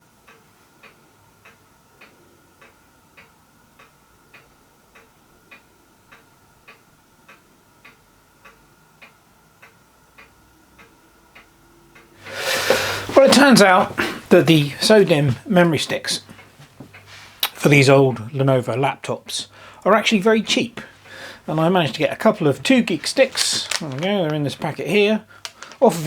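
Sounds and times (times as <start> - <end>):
faint ticking: 0.3 - 26.0.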